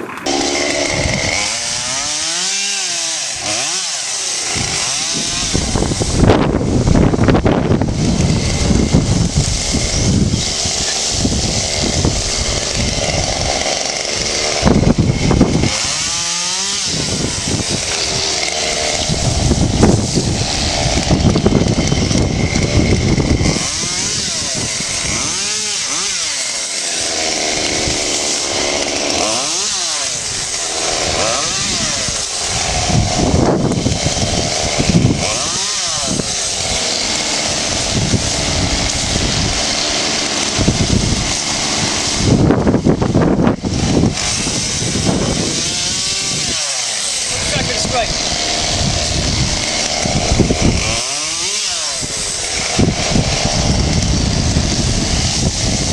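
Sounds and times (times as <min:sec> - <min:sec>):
chainsaw revving: 0:00.0 - 0:55.9.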